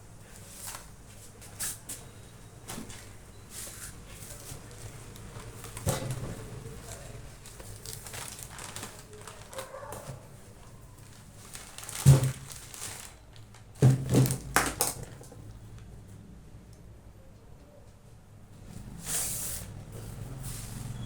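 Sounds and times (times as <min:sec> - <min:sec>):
packaging rustling and crinkling: 0:02.8 - 0:15.8
books knocking: 0:13.8 - 0:15.5.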